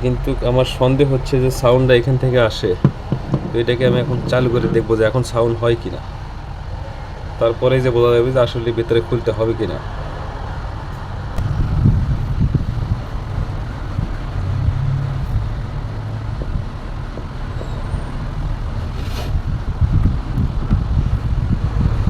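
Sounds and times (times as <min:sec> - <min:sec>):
mixer grinder rumbling and rattling: 0:02.8 - 0:05.2.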